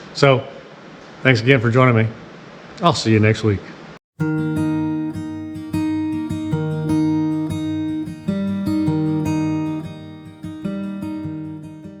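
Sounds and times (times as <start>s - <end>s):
acoustic guitar strumming chords: 4.2s - 12.0s.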